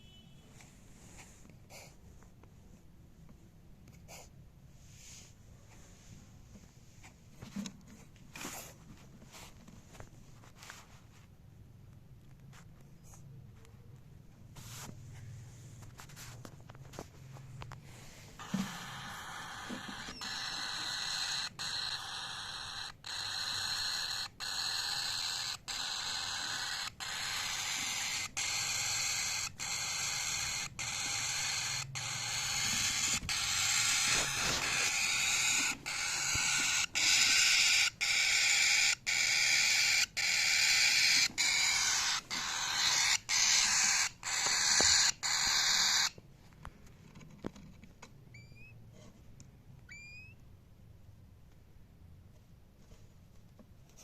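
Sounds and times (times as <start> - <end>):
cockatiels chirping: 18.4 - 46.2, 49.9 - 50.4.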